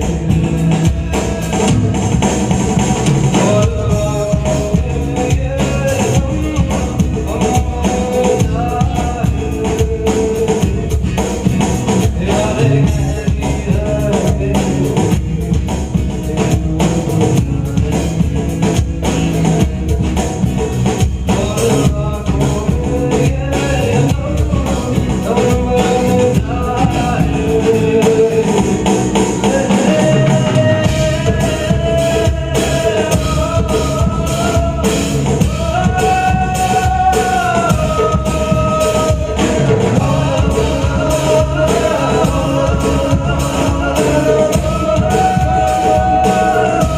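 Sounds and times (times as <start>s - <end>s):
drum kit beat: 0.0s - 46.9s
guitar playing: 0.0s - 46.9s
live band music: 0.0s - 46.9s
person singing long notes: 21.4s - 46.9s.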